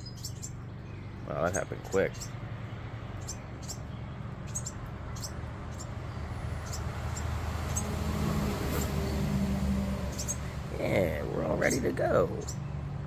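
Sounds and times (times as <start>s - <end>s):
baby birds peeping: 0.0s - 13.0s.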